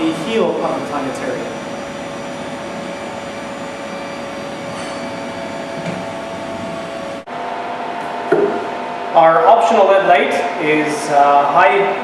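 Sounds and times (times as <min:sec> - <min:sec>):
floor grinding machine humming: 0:00.0 - 0:09.1.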